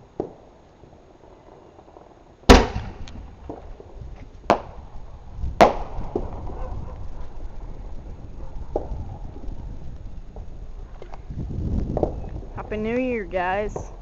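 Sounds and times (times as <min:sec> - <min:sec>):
fireworks bangs: 0:02.5 - 0:10.5.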